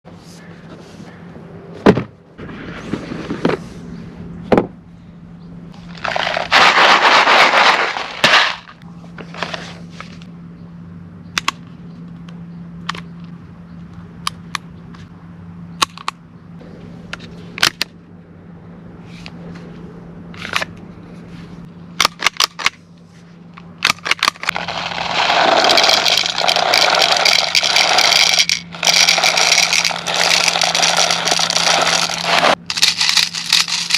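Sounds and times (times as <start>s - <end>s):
steady low hum: 0.1s - 33.9s
packaging rustling and scraping: 5.8s - 10.3s, 24.1s - 33.9s.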